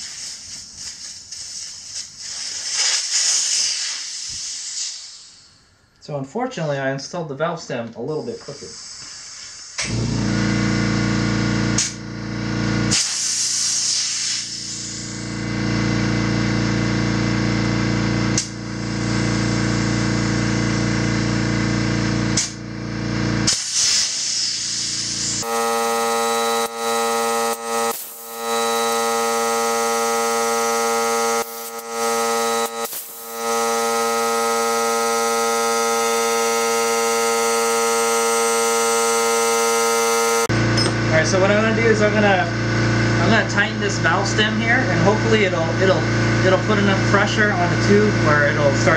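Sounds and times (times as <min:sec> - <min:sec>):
air compressor running: 0:00.0 - 0:03.0, 0:08.4 - 0:48.9
hissing air bursts: 0:00.0 - 0:05.6, 0:08.3 - 0:09.8, 0:12.9 - 0:15.2, 0:23.5 - 0:25.4, 0:26.6 - 0:34.0.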